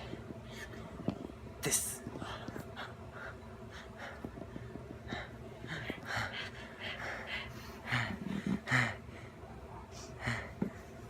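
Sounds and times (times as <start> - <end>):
person gasping breaths: 2.2 - 10.8.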